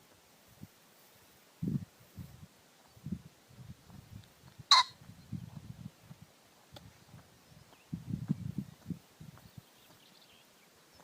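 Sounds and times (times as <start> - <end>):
pheasant call: 4.7 - 5.0.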